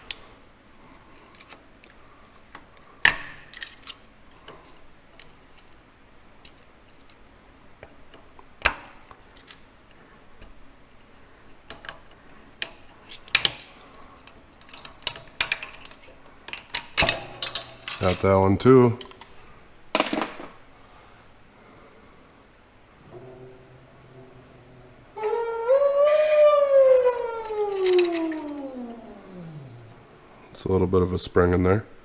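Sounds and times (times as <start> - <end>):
screwdrivers clinking on steel parts: 14.7 - 18.3.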